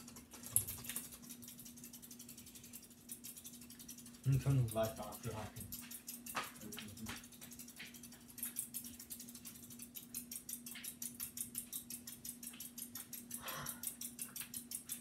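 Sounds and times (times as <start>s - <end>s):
ceiling fan motor hum: 0.0s - 15.0s.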